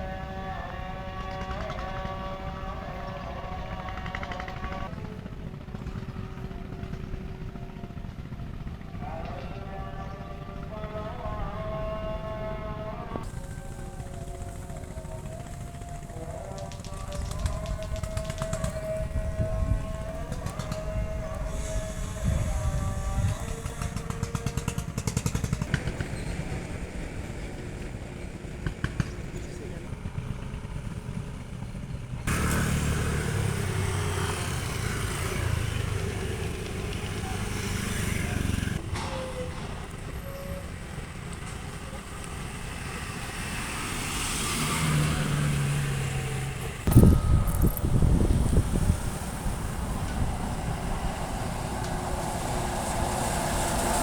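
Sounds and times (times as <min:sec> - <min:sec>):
vehicle engine running: 0:00.0 - 0:09.4, 0:11.4 - 0:54.0
wind buffeting microphone: 0:16.1 - 0:29.3, 0:46.4 - 0:54.0
low hum: 0:46.1 - 0:52.6.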